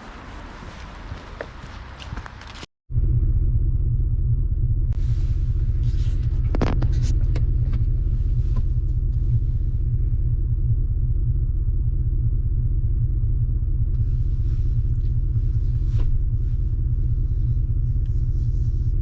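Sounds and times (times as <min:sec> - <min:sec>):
car cabin rumble: 0:00.1 - 0:19.0.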